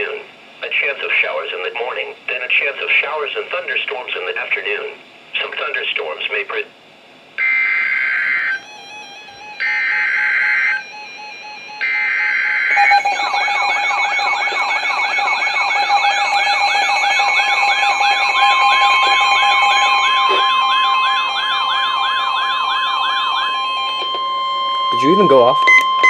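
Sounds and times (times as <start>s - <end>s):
screechy data tones: 7.4s - 26.0s
warbling alert siren: 7.4s - 26.0s
steady alert tone: 12.7s - 23.7s.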